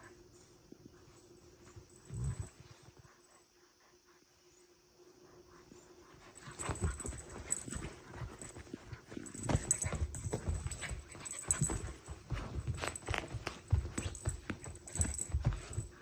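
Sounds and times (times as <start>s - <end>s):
puppy scuffling and rustling: 0.4s - 3.1s, 6.1s - 16.0s.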